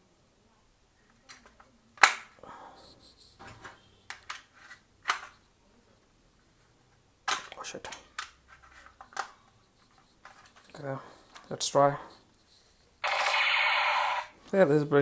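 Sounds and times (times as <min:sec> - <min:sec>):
sharp plastic clicks: 0:01.2 - 0:02.4
light scraping and handling: 0:02.7 - 0:13.0.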